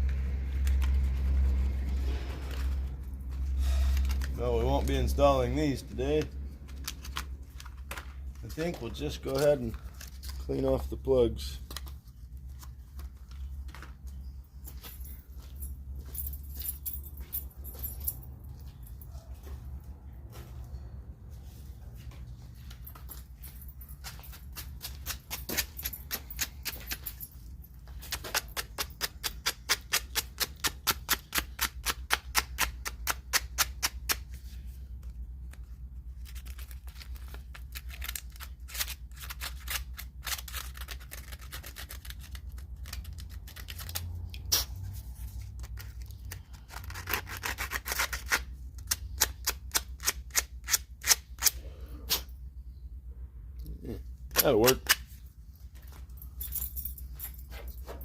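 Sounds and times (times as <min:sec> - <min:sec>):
scrubbing spark plugs by hand: 0:00.0 - 0:14.0.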